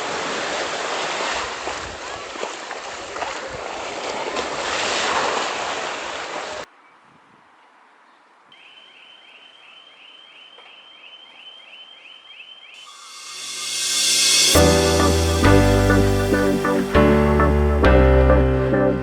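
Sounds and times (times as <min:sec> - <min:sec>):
faint high chirping: 0:08.6 - 0:16.9.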